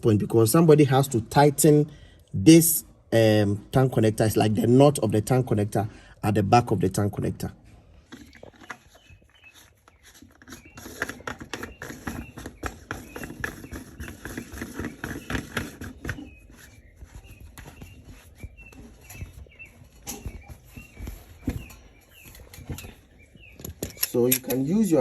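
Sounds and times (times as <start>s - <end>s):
tarpaulin rustling: 8.6s - 24.3s.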